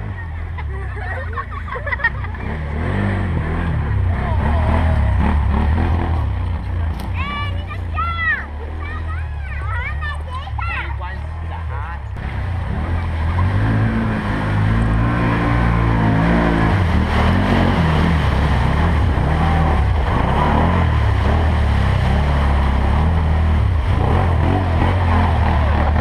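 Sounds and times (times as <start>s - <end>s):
atv engine revving: 0.0s - 26.0s
rough rushing noise: 12.2s - 26.0s.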